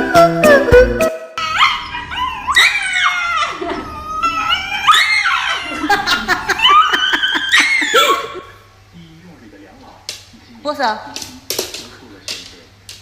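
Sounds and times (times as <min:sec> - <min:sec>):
music: 0:00.0 - 0:01.4
dog howling: 0:01.4 - 0:08.5.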